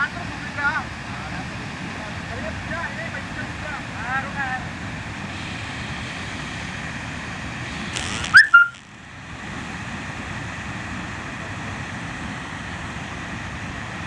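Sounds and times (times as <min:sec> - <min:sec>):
loud rising whistle: 0:08.0 - 0:08.8.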